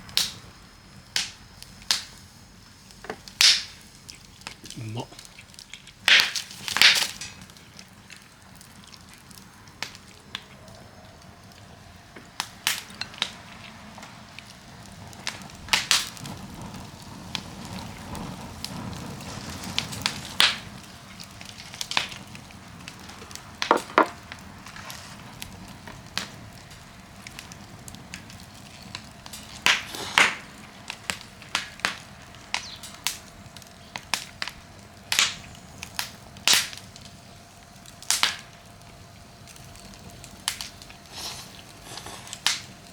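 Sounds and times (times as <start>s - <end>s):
campfire crackling and popping: 0.0s - 42.9s
low steady hiss: 0.0s - 42.9s.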